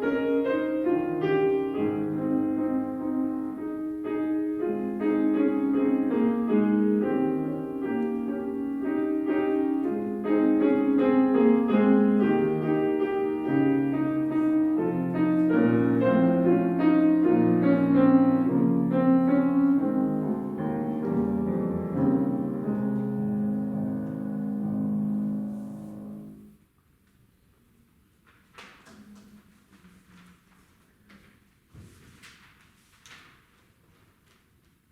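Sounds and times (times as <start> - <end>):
solo piano piece: 0.0 - 26.7.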